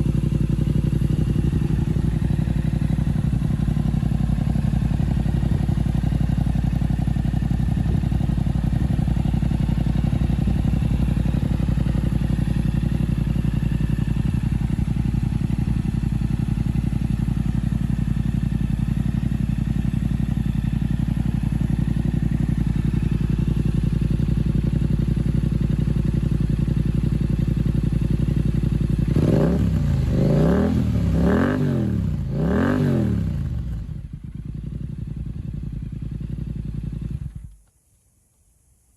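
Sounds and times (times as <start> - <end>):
motorcycle engine idling and revving: 0.0 - 37.7.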